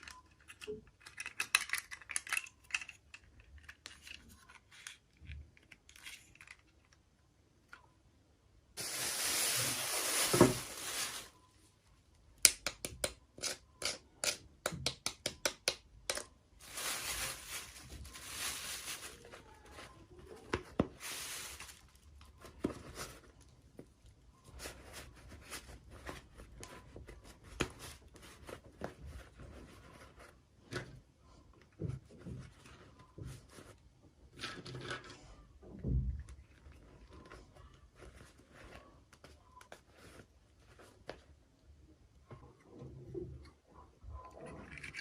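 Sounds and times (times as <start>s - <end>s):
small plastic pieces clicking: 0.0s - 7.0s
packaging tearing and crinkling: 16.6s - 19.4s.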